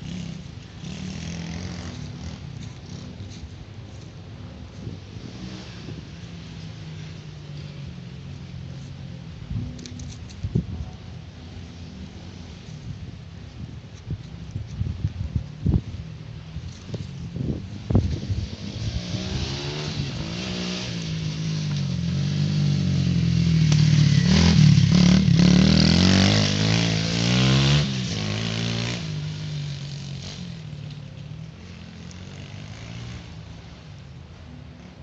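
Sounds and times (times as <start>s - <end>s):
motorbike engine revving: 0.0s - 3.4s, 17.9s - 30.7s.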